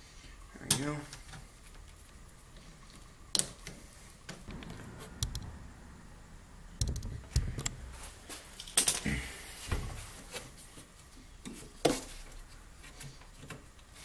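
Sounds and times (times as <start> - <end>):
sharp clicks and light knocks: 6.8 - 7.8.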